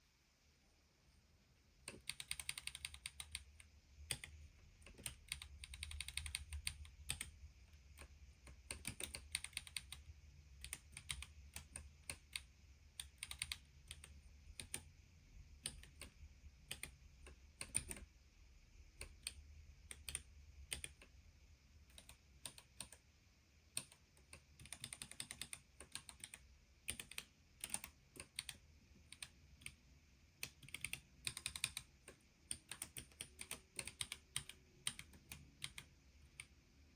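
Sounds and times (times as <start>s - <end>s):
keyboard typing: 1.9s - 7.3s, 8.0s - 10.0s, 10.6s - 14.9s, 15.6s - 18.1s, 19.0s - 21.1s, 23.8s - 29.8s, 30.4s - 36.6s.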